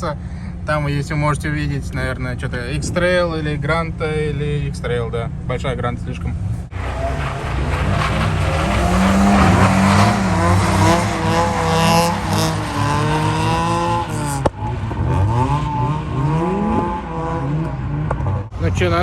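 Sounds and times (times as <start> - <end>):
car engine revving hard: 6.6 - 18.5.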